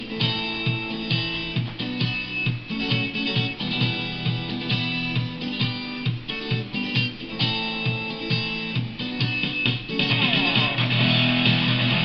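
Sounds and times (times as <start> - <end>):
rock guitar chords: 0.0 - 12.0.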